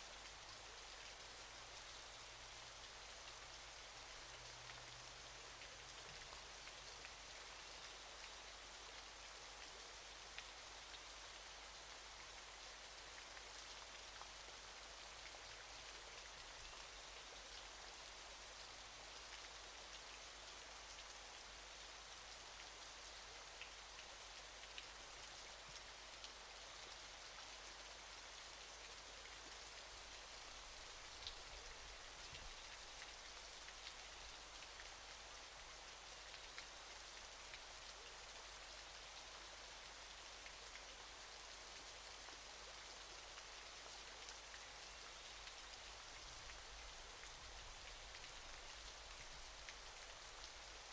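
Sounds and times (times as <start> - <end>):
waterfall hiss: 0.0 - 7.9.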